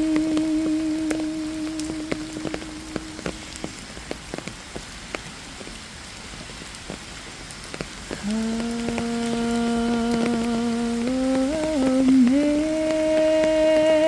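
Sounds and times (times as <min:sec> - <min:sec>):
held note of hymn melody: 0:00.0 - 0:04.0
raindrops ticking on a surface: 0:00.0 - 0:14.0.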